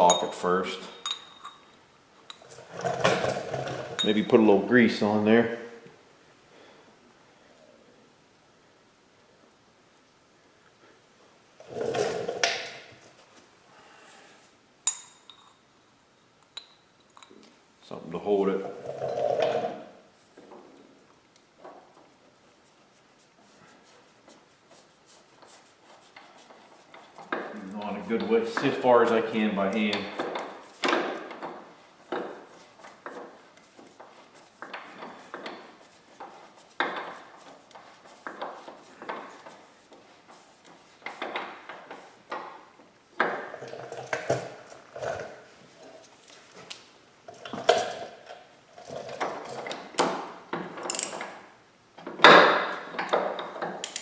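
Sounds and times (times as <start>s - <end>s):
metal tools scraping and rustling: 0.0s - 4.6s, 18.6s - 19.8s
ringing metal clink: 0.1s - 2.4s, 14.9s - 15.7s.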